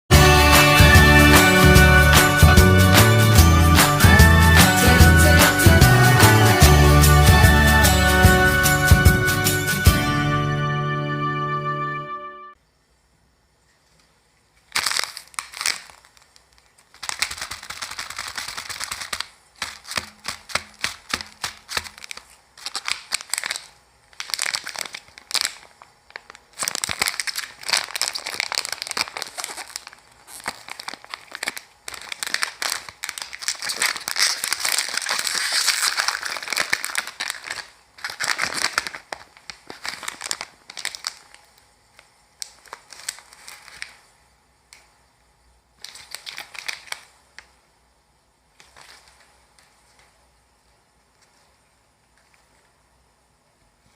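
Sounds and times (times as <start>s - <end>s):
plastic packaging crinkling and tearing: 14.6s - 44.1s, 45.8s - 47.6s, 48.5s - 50.2s.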